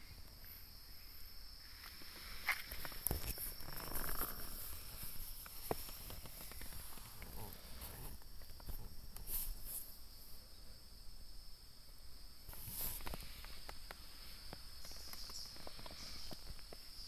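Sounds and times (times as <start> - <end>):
insects trilling: 0.0 - 17.0
light ticks and rustles: 1.8 - 10.3, 12.5 - 17.0.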